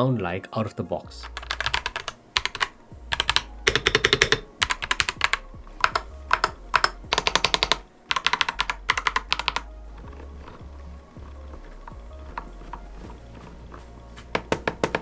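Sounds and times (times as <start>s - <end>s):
mechanical keyboard key clacks: 1.2s - 10.6s.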